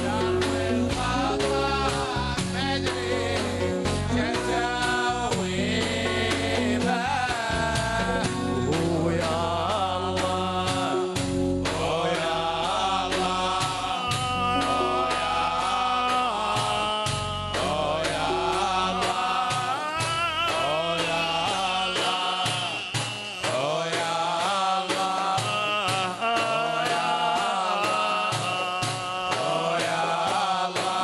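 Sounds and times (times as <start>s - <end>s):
steady drum beat: 0.0s - 31.0s
voices singing: 0.0s - 31.0s.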